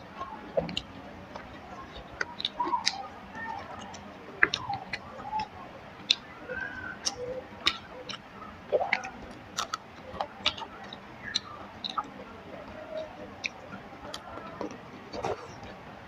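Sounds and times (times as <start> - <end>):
wet mouth clicks and lip smacks: 3.8 - 6.3, 7.0 - 12.1.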